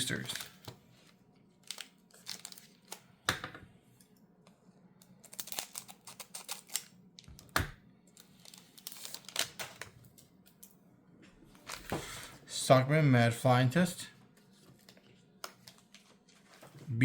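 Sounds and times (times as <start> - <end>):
plastic wrapper crinkling and tearing: 0.0 - 0.7, 1.5 - 3.1, 5.0 - 7.3, 8.1 - 10.3.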